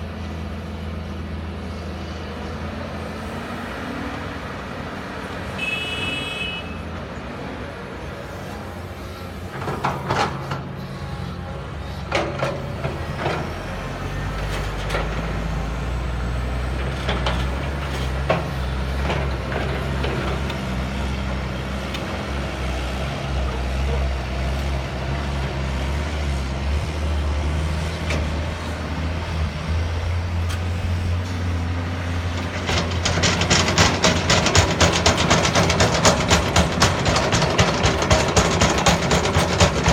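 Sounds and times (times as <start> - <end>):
excavator diesel engine under load: 0.0 - 5.8, 6.8 - 39.9
bucket clanks and knocks: 32.6 - 39.9.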